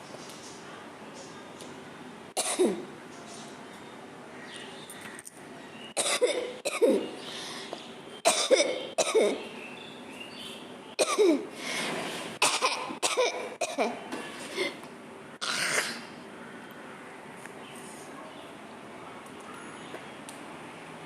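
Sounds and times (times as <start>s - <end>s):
person coughing: 6.0s - 7.1s, 8.3s - 9.4s, 11.0s - 11.5s, 12.4s - 14.0s.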